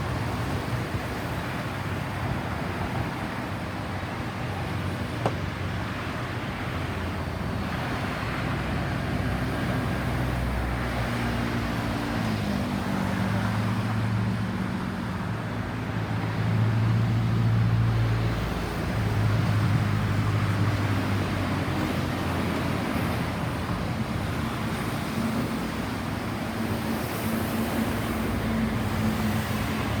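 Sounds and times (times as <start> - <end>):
road traffic noise: 0.0 - 30.0.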